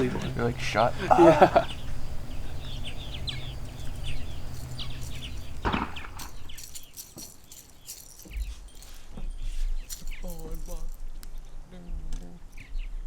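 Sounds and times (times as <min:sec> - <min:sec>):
low steady hum: 0:00.0 - 0:08.9
birds chirping: 0:00.0 - 0:11.0.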